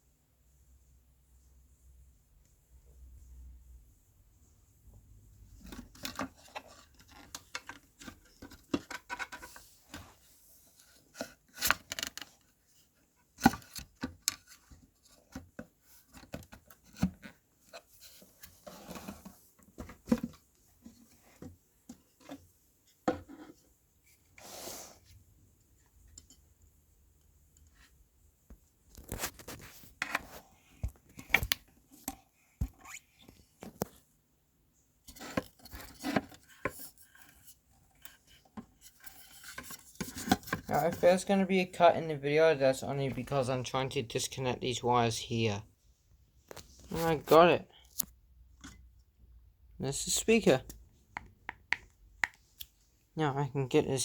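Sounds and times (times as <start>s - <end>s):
parts and tools clicking and scraping: 5.6s - 10.1s, 35.1s - 41.0s.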